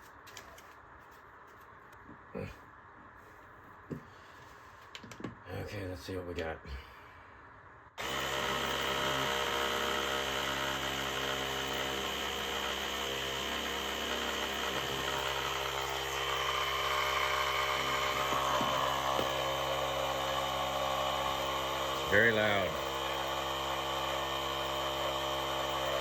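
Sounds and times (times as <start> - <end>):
air compressor running loud: 8.0 - 26.0.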